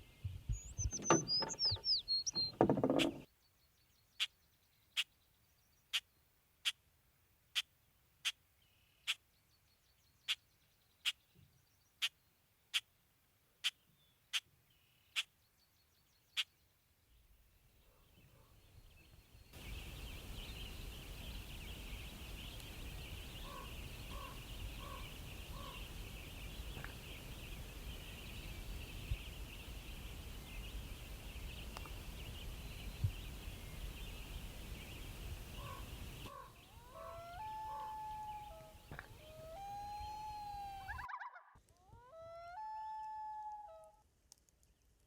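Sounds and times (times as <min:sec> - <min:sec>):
bird calling: 0:00.5 - 0:03.3, 0:19.6 - 0:44.0
bird calls with sliding notes: 0:19.6 - 0:43.9.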